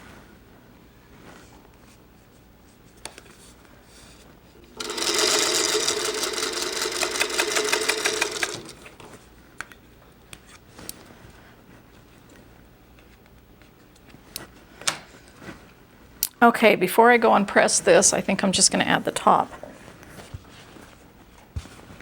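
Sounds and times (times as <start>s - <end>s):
sewing machine stitching: 4.6s - 9.0s.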